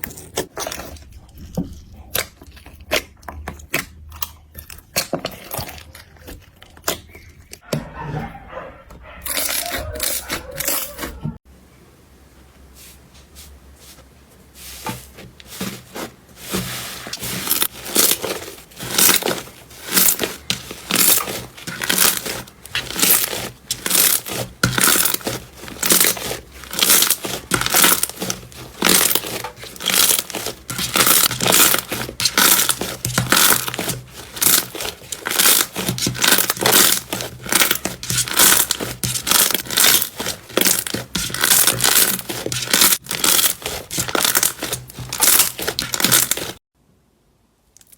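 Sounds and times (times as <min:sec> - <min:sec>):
slime squishing and popping: 0:17.2 - 0:46.6.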